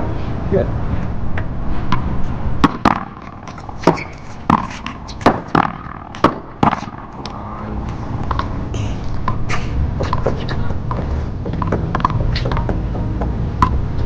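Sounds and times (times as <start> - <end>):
ball smacking off wall: 2.6 - 7.0
paddles striking ball: 2.6 - 7.3.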